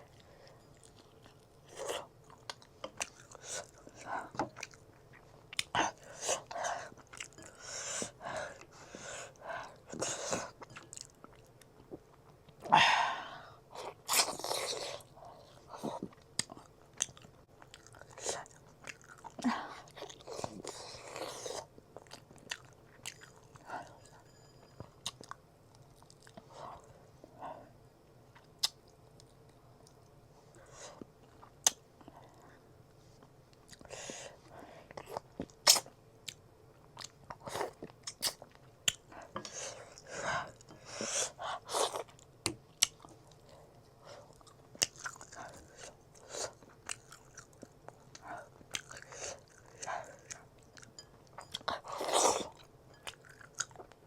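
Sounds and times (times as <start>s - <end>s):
person chewing food: 0.0s - 12.7s, 13.7s - 27.0s, 33.2s - 54.0s.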